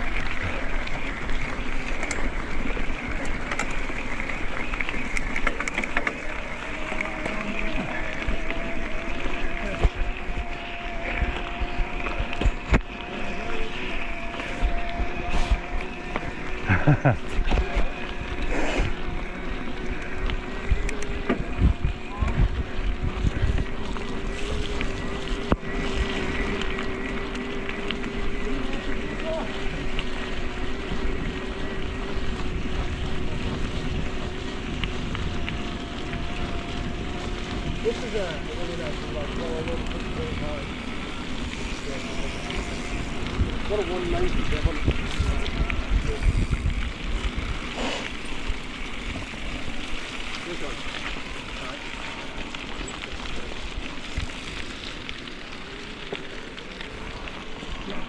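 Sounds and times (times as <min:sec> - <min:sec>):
bike knocking over rough ground: 0:00.0 - 0:13.2
electric bike motor whining: 0:00.0 - 0:58.0
tyres rumbling over ground: 0:00.0 - 0:58.0
wind on microphone: 0:06.4 - 0:55.1.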